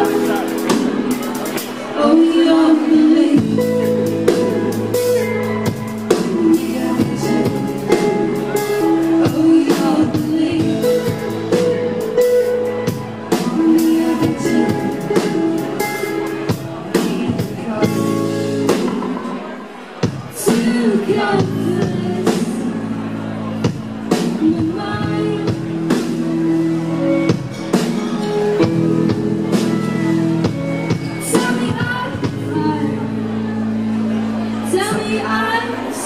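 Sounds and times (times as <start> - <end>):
drum kit: 0.0 - 2.0, 3.3 - 33.4
person singing: 0.0 - 19.0, 20.3 - 23.0
guitar: 0.0 - 36.0.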